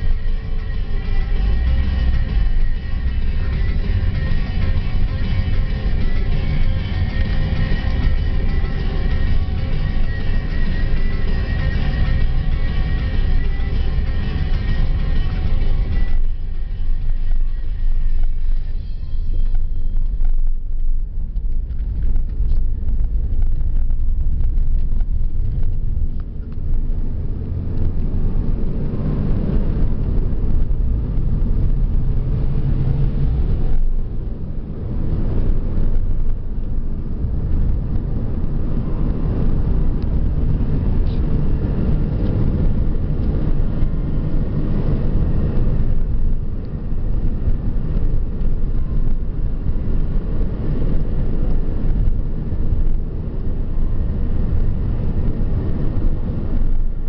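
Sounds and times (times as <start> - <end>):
car engine rumble: 0.0 - 57.0
tyre noise on road: 0.0 - 57.0.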